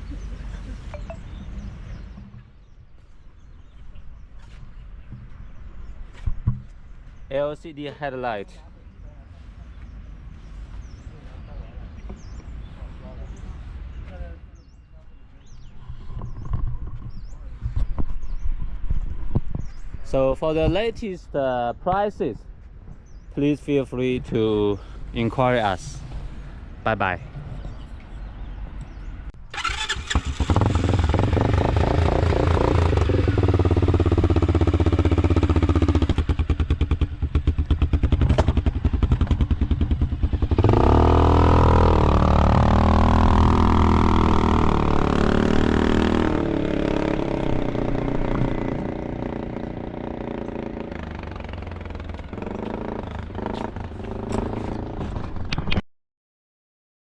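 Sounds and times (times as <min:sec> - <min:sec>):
atv engine revving: 0:29.5 - 0:55.6.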